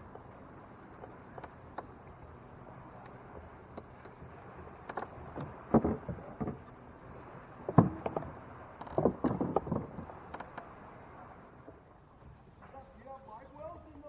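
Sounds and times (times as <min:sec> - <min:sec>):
gear knocking on kayak: 0:04.9 - 0:06.8, 0:07.6 - 0:10.5.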